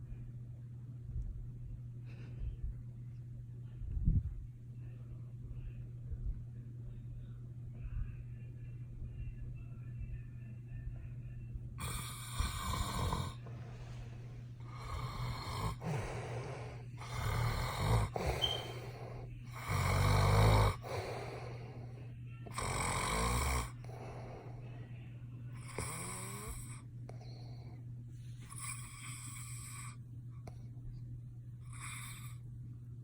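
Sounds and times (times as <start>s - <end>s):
low hum: 0.0s - 19.7s
loud snoring: 11.8s - 13.5s, 14.6s - 21.8s, 22.5s - 24.6s, 25.6s - 26.8s, 28.5s - 30.0s, 31.7s - 32.4s.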